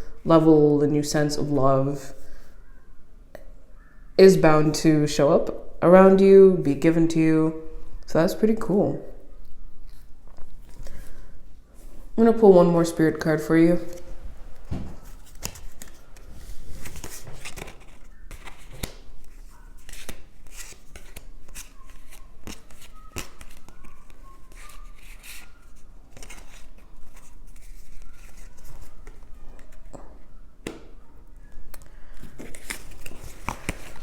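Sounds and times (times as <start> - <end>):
cards being shuffled: 13.8 - 29.9, 32.2 - 34.0.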